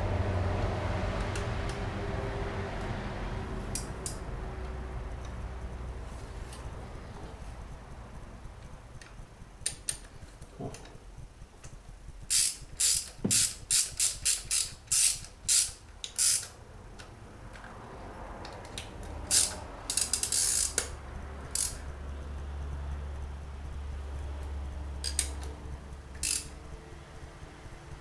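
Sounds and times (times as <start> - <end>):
ratchet wrench clicking: 11.6 - 17.6, 18.4 - 23.0, 24.4 - 27.9.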